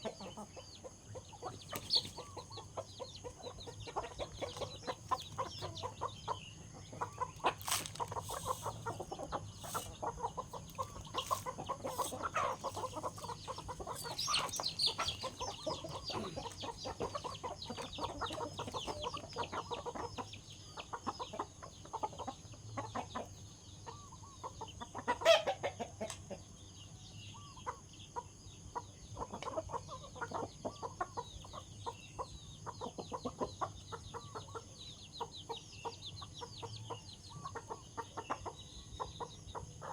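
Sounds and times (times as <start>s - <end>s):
chickens clucking: 0.0s - 39.9s
chicken squawk: 1.4s - 26.2s.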